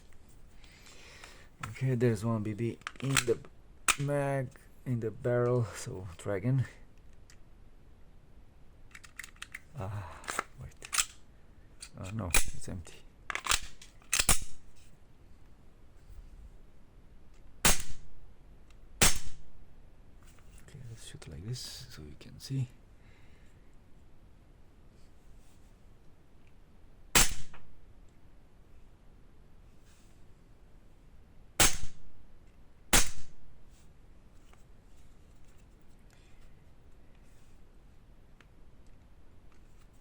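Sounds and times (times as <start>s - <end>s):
airsoft pistol shots: 17.6s - 18.1s, 19.0s - 19.5s, 27.2s - 27.7s, 31.6s - 32.1s, 32.9s - 33.4s.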